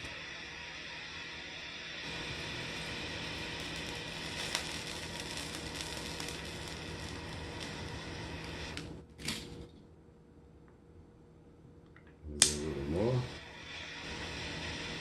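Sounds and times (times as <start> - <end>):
hand torch hissing: 0.0 - 9.0, 12.4 - 15.0
sharp click: 12.4 - 12.6.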